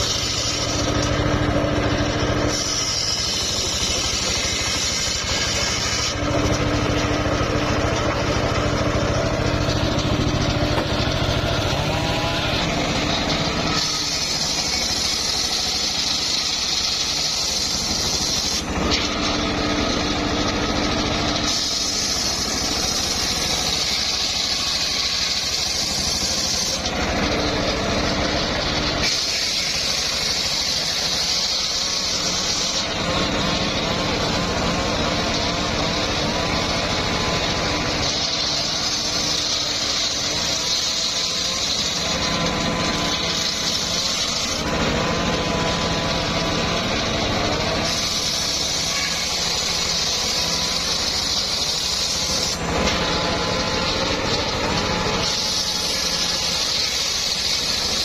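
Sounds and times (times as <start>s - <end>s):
circular saw cutting wood: 0.0s - 58.0s.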